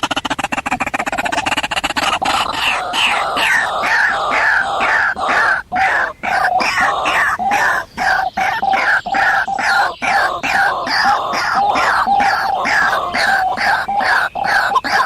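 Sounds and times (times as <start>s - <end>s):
bird calling: 0.0s - 15.0s.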